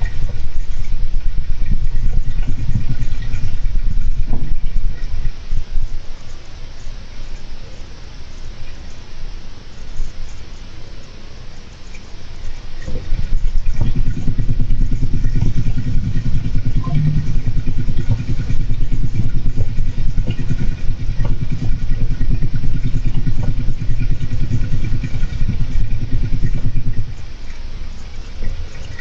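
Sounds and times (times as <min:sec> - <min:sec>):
hamster wheel rattling: 0:00.0 - 0:06.0, 0:11.9 - 0:29.0.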